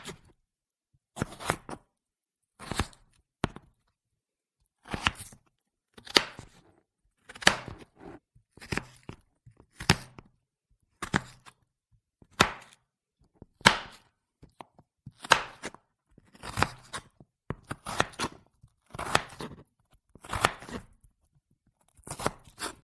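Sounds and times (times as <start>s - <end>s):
knife chopping vegetables: 0.0s - 0.3s, 1.2s - 1.8s, 2.6s - 3.7s, 4.8s - 5.4s, 6.0s - 10.3s, 11.0s - 11.6s, 12.2s - 12.8s, 13.5s - 21.0s, 22.0s - 22.8s.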